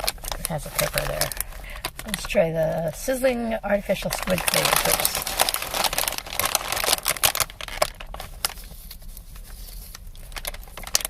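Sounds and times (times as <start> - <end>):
chip bag crinkling: 0.0 - 2.7, 3.9 - 11.0
crunching potato chip: 4.2 - 9.2, 9.9 - 11.0.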